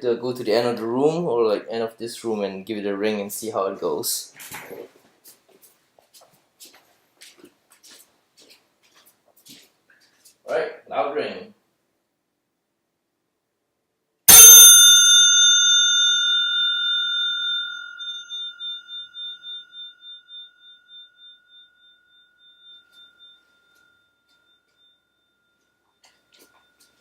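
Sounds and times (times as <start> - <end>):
bicycle bell ringing: 14.3 - 27.0.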